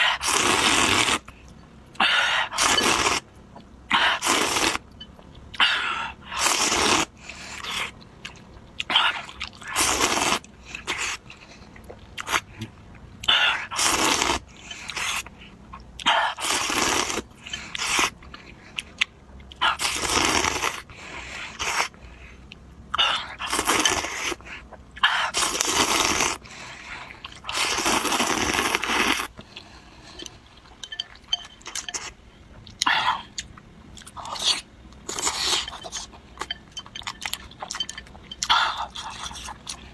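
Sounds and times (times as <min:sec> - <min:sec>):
noodle slurping: 0:00.0 - 0:01.3, 0:02.5 - 0:03.2, 0:03.9 - 0:04.8, 0:06.3 - 0:07.9, 0:08.9 - 0:11.2, 0:13.6 - 0:15.3, 0:16.2 - 0:18.2, 0:19.6 - 0:20.9, 0:25.3 - 0:26.4, 0:27.4 - 0:29.3
chewing: 0:27.1 - 0:39.9.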